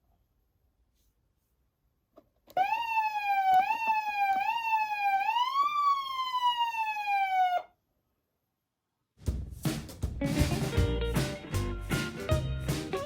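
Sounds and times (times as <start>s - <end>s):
electronic siren: 2.5s - 7.7s.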